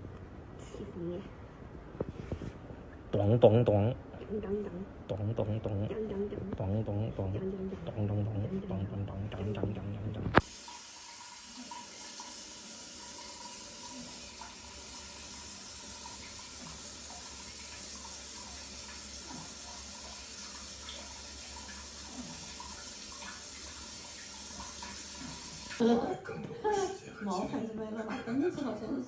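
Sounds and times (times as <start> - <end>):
running water: 10.3 - 25.9.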